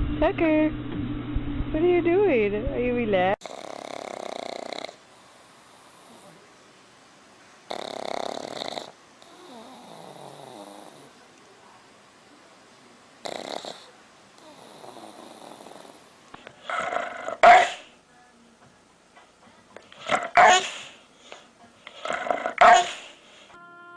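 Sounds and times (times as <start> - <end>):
dog snoring: 3.4 - 6.5, 7.7 - 11.2, 13.2 - 17.9, 21.9 - 23.2.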